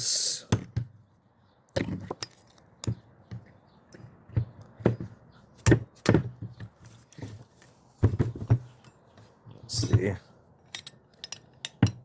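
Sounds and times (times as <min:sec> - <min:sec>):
metal parts knocking and clunking: 0:08.0 - 0:09.0, 0:09.7 - 0:12.0.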